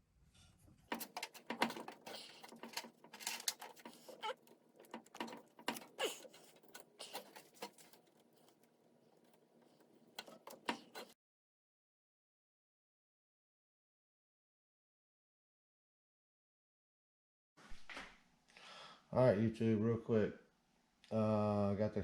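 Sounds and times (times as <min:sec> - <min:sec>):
hand tool clicks and scrapes: 0:00.9 - 0:11.2.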